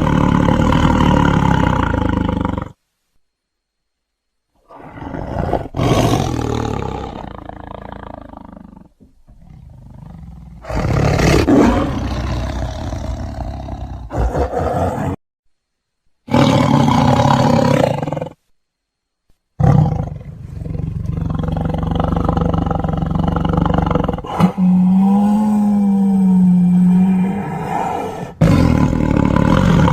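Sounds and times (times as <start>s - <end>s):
large carnivores roaring and growling: 0.0s - 2.8s, 4.6s - 15.2s, 19.6s - 29.9s.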